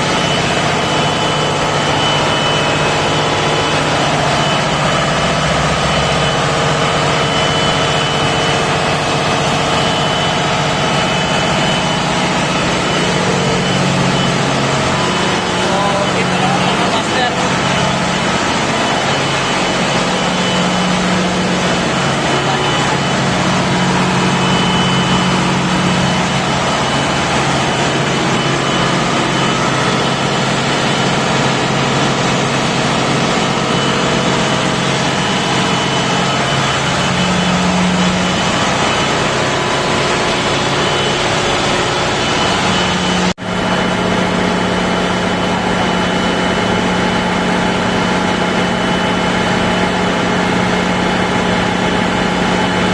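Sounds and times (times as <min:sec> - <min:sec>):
diesel generator running: 0:00.0 - 0:52.9.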